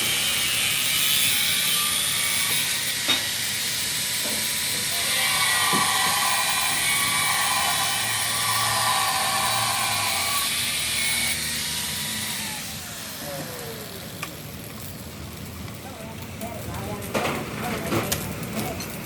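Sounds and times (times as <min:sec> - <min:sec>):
motor winding down whine: 0:00.0 - 0:14.5
power tool grinding: 0:00.0 - 0:15.0.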